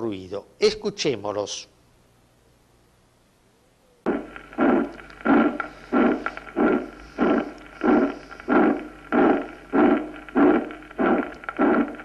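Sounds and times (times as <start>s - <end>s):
harsh heart murmur: 4.1s - 12.0s.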